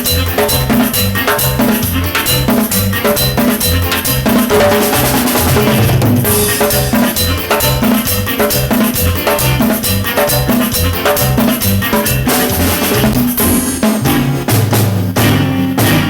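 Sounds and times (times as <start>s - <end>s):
repeating bass notes: 0.0s - 14.5s
band music: 0.0s - 16.0s
drum kit beat: 0.0s - 16.0s.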